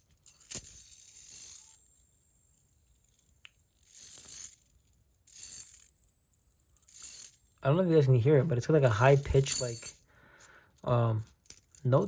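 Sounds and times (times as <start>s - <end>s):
fidget spinner ringing: 0.0s - 7.7s.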